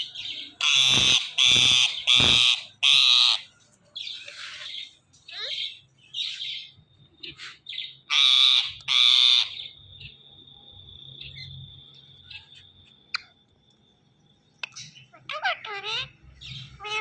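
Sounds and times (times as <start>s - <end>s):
parakeet chirps: 0.1s - 9.8s, 14.6s - 17.0s
parakeet harsh screeches: 0.6s - 3.4s.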